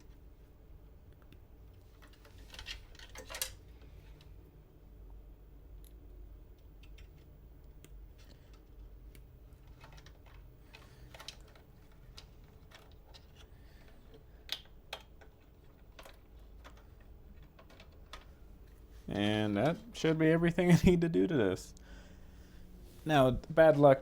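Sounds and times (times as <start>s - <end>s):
faint low hum: 0.0s - 24.0s.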